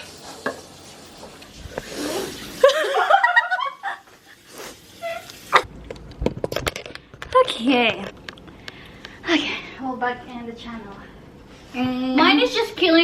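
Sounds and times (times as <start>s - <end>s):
woman laughing: 2.6s - 4.3s.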